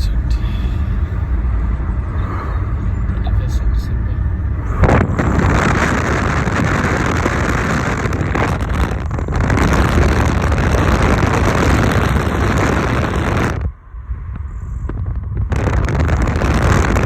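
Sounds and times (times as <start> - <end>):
car rushing noise with deep rumble: 0.0 - 17.0
wind buffeting microphone: 0.0 - 17.0.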